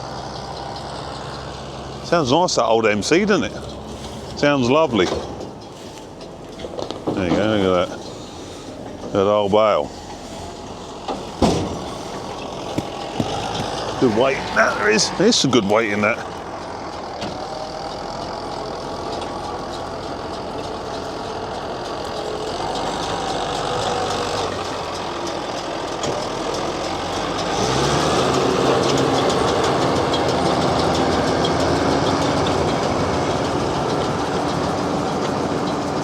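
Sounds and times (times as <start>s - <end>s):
tractor diesel engine running: 0.0s - 36.0s.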